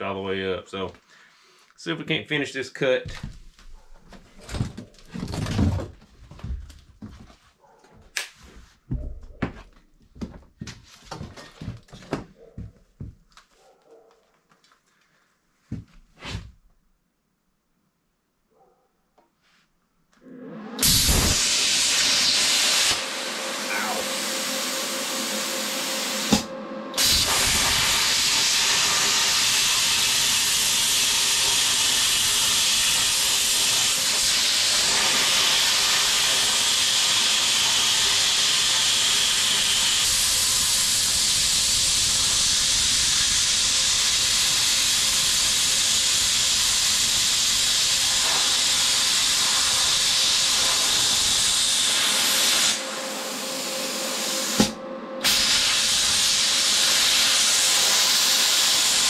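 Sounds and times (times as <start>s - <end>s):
plasma cutter hissing: 20.8s - 26.4s, 27.0s - 59.0s
brief pop: 54.6s - 55.4s.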